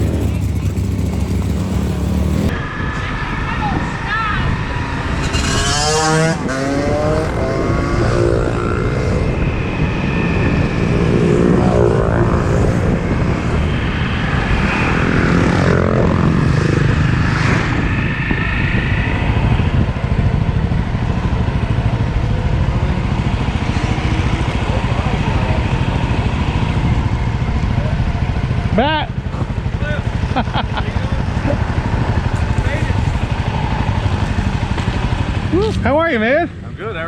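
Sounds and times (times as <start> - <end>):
motorcycle engine running: 0.0 - 2.8, 4.6 - 37.0.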